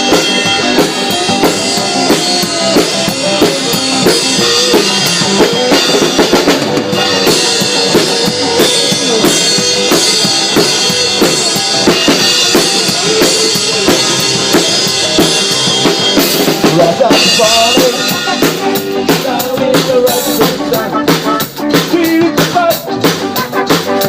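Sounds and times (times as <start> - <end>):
band playing instrumental: 0.0 - 24.0
bending lead melody: 0.0 - 24.0
drum kit beat: 0.0 - 24.0.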